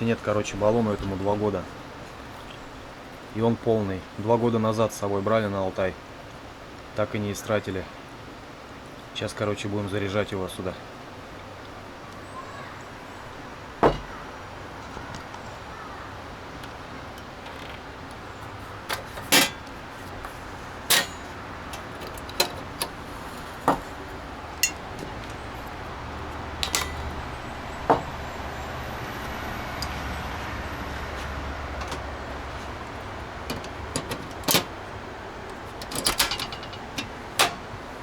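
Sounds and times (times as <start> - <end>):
gas canister clicks and clacks: 26.6 - 27.1, 33.4 - 34.8, 35.5 - 37.8.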